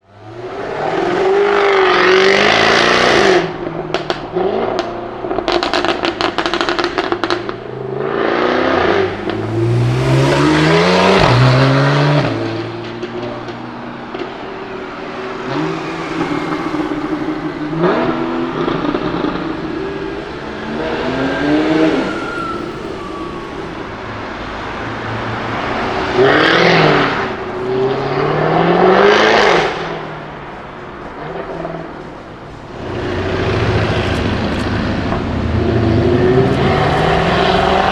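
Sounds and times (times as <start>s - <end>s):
car engine accelerating hard: 0.0s - 37.9s
exhaust pops and crackles: 3.4s - 7.8s, 11.0s - 21.2s, 26.2s - 37.9s.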